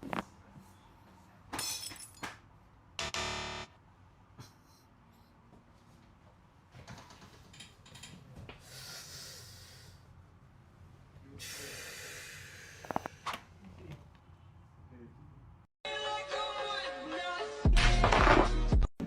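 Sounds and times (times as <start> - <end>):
person breathing out hissing: 11.4 - 13.1.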